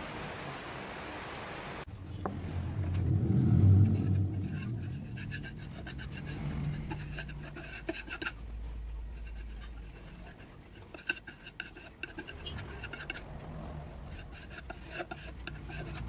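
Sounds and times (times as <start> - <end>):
wood rubbing on sander: 2.8 - 8.4, 9.2 - 16.0.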